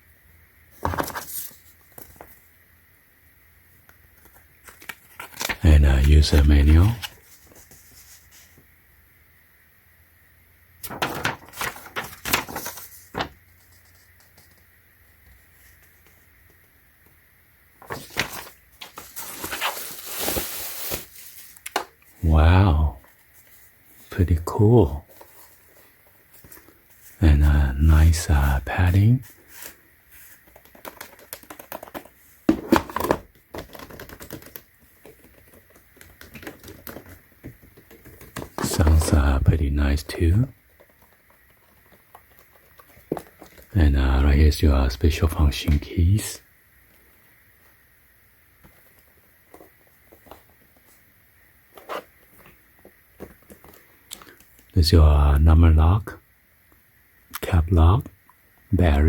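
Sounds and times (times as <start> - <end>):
packaging rustling: 4.2 - 5.6, 10.8 - 14.6, 17.8 - 22.2, 24.9 - 27.2, 29.2 - 39.1, 40.6 - 43.7.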